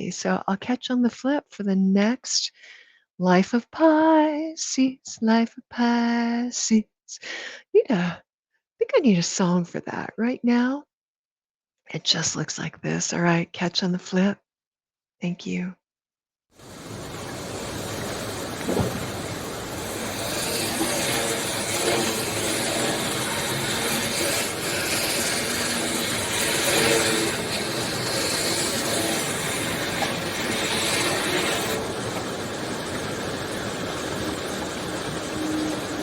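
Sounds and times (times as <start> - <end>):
loud rushing noise: 16.6 - 36.0.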